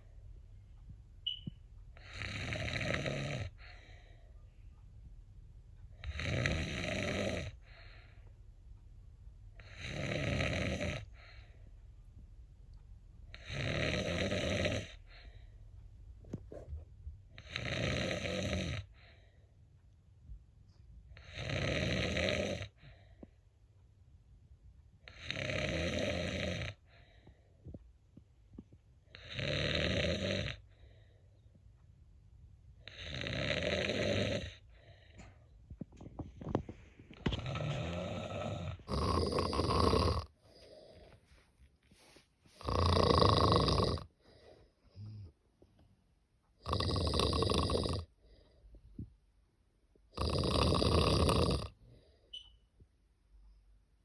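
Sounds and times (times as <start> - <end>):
cat snoring: 2.0 - 3.7, 6.0 - 8.0, 9.6 - 11.5, 13.3 - 15.3, 17.4 - 18.9, 21.2 - 22.9, 25.1 - 26.8, 29.1 - 30.6, 32.8 - 34.6, 37.3 - 41.0, 42.6 - 44.1, 46.6 - 48.4, 50.1 - 52.0.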